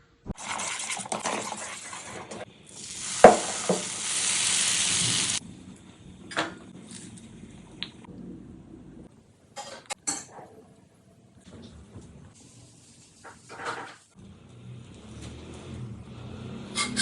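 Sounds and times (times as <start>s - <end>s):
food sizzling in hot oil: 2.7s - 5.4s
utensil knock: 3.2s - 3.9s.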